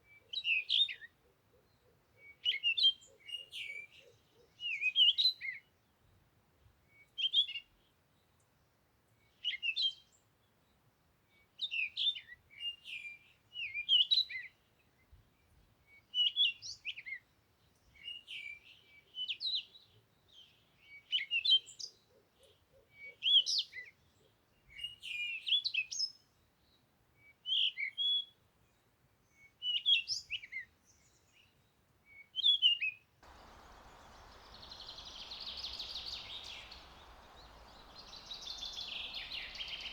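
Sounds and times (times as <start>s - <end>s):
background hiss: 33.2s - 39.9s
songbird warbling: 33.3s - 39.9s.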